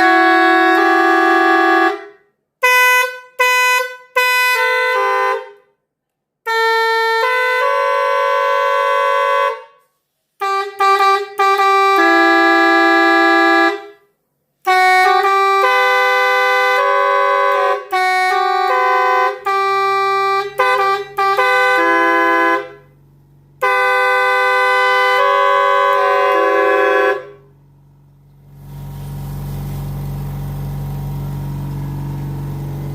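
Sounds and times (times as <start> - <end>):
multi-tone air horn: 0.0 - 5.7, 6.4 - 27.8.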